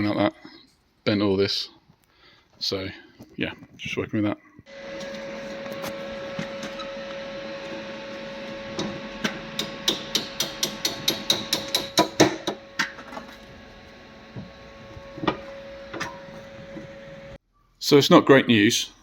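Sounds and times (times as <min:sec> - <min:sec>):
hammer striking metal: 0:08.8 - 0:13.2.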